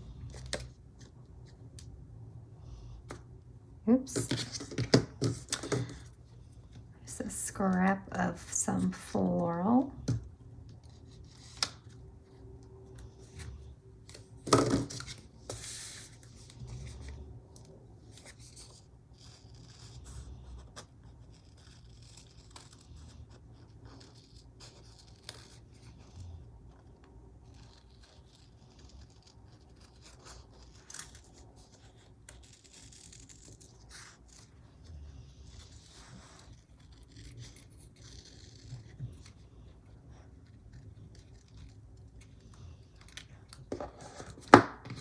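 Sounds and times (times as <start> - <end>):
scissors snipping paper: 20.7 - 26.0, 27.4 - 34.6, 35.4 - 45.0.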